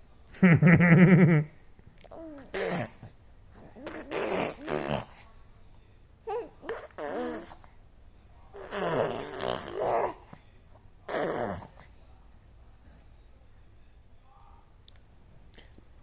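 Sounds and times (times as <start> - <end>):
baby making vocal noises: 2.1 - 5.2, 6.3 - 7.6, 8.6 - 10.3, 11.1 - 11.9.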